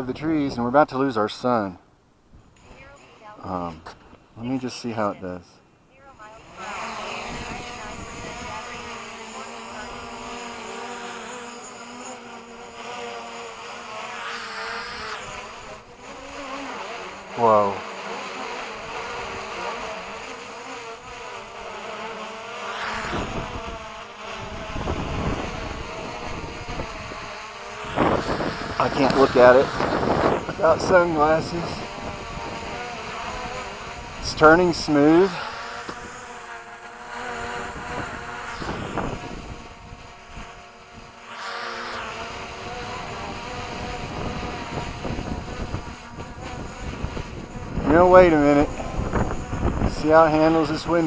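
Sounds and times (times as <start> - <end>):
drone propellers buzzing: 6.2 - 51.0
wind buffeting microphone: 7.2 - 9.0, 23.0 - 32.8, 37.6 - 40.5, 42.6 - 50.2.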